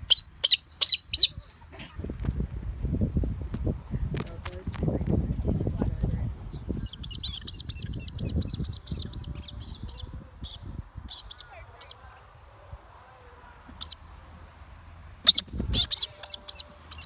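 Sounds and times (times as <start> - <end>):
cockatoo calling harshly: 0.1 - 1.6, 15.2 - 17.0.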